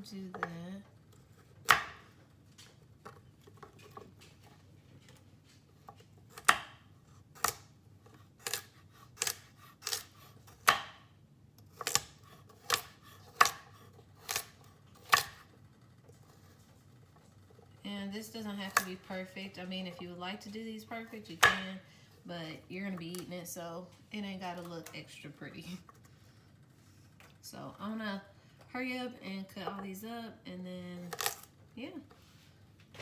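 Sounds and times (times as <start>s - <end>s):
knife chopping vegetables: 0.2s - 2.2s, 5.6s - 11.0s, 11.6s - 15.5s, 18.6s - 21.8s, 31.0s - 31.5s.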